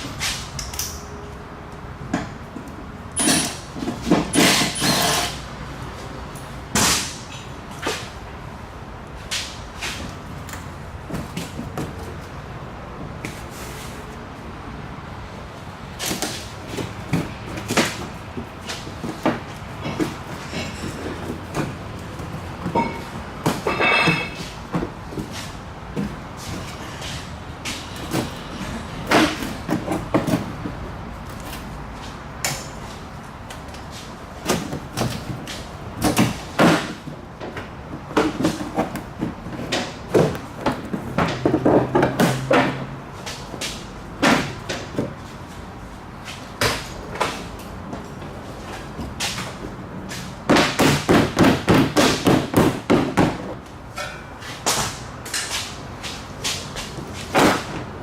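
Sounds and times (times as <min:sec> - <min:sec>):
tools knocking and clanking on metal: 0:16.0 - 0:31.6, 0:34.4 - 0:45.2, 0:50.5 - 0:55.6.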